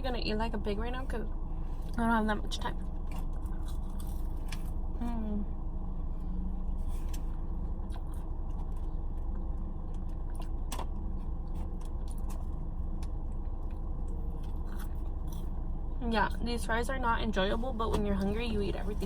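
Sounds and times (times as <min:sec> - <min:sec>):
car engine humming: 0:00.0 - 0:19.0
person eating fries: 0:03.0 - 0:04.8, 0:06.9 - 0:15.6.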